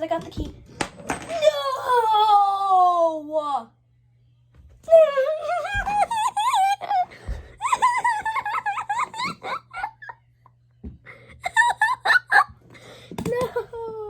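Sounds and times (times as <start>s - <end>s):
boy giggling: 5.0s - 10.2s.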